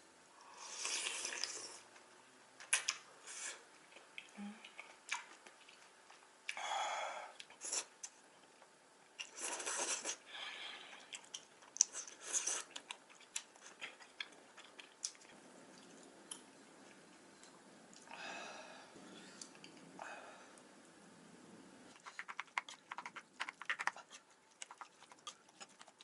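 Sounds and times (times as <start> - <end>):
person chewing noodles: 0.6 - 2.0, 2.7 - 6.6, 7.3 - 8.2, 9.2 - 18.2, 21.9 - 26.0.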